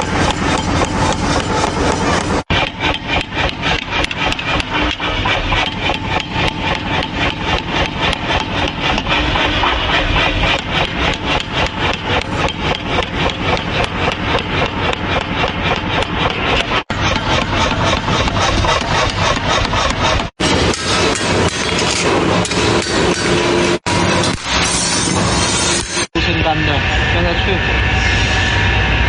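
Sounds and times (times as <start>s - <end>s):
steady motor noise: 0.0s - 29.0s
workshop machine rhythmic strokes: 0.0s - 29.0s.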